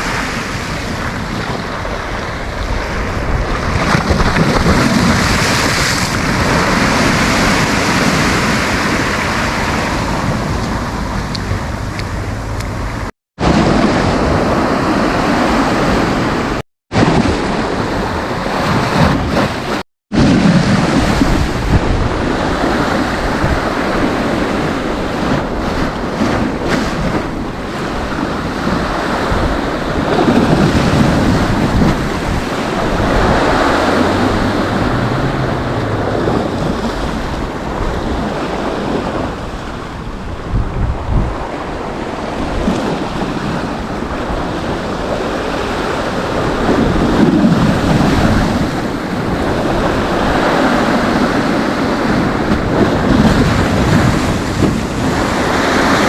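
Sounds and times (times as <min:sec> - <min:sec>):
sea surf breaking on a beach: 0:00.0 - 0:56.0
wind buffeting microphone: 0:00.0 - 0:56.0.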